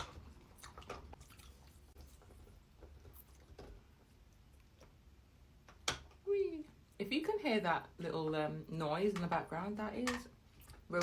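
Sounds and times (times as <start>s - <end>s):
faint chewing: 0.0s - 5.1s.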